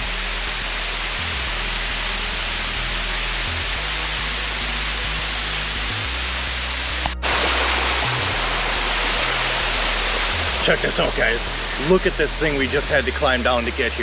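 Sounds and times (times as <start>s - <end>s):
waterfall roaring: 0.0s - 13.5s.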